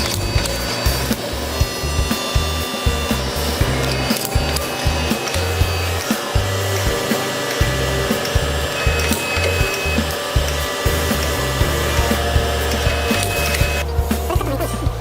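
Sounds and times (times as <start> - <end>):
sawmill saw cutting wood: 0.0 - 13.8
background music with beat and bass: 0.0 - 15.0.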